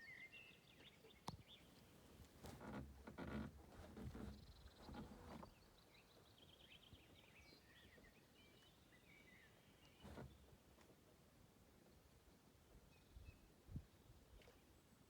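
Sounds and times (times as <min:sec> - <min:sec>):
faint bird song: 0:00.0 - 0:02.2, 0:04.0 - 0:10.6, 0:11.7 - 0:15.0.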